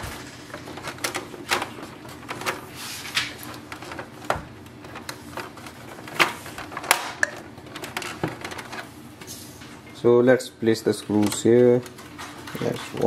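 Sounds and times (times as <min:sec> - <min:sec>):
plastic parts clicking and knocking: 0:00.5 - 0:08.9, 0:11.0 - 0:13.0.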